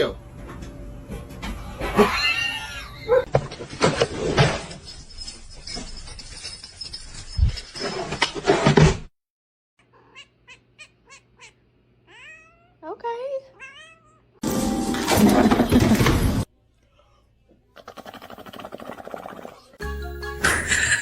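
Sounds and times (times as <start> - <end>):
cat crying: 1.9 - 3.3, 9.9 - 12.8, 13.6 - 14.4.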